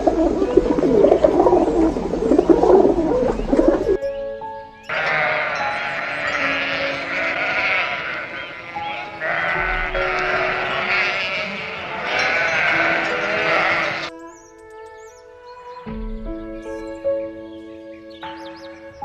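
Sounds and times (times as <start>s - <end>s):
soft background music: 3.9s - 19.0s
chorus of animal calls: 4.9s - 14.1s.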